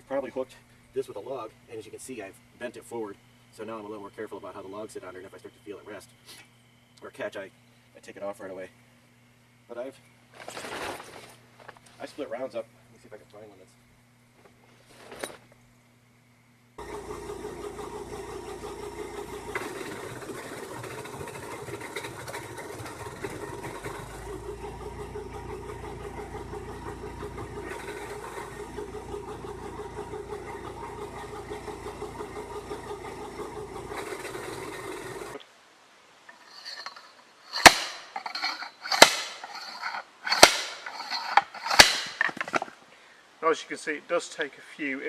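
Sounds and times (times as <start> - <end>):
engine running steadily: 16.8 - 35.4.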